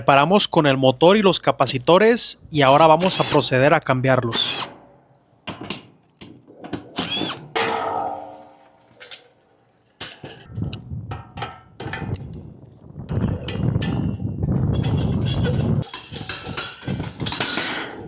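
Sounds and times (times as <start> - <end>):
sheet metal clanging: 2.6 - 10.5, 14.8 - 18.0
cordless drill running: 3.0 - 3.5, 4.3 - 4.8, 6.9 - 7.6.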